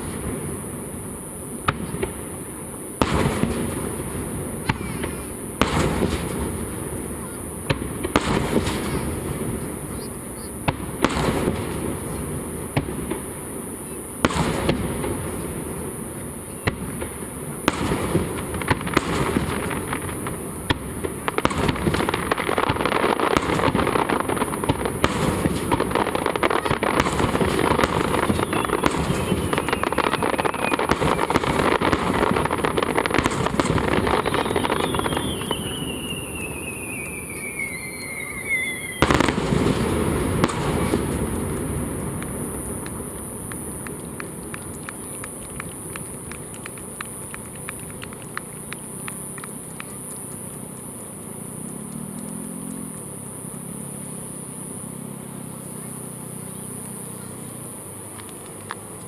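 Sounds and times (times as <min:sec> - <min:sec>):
dense firework crackling: 0:00.0 - 0:59.0
firework shell bursts: 0:12.8 - 0:50.5.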